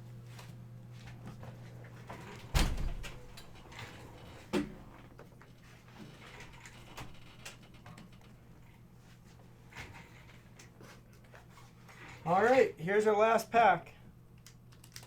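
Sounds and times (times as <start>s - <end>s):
light clicks and handling noise: 14.3s - 15.0s.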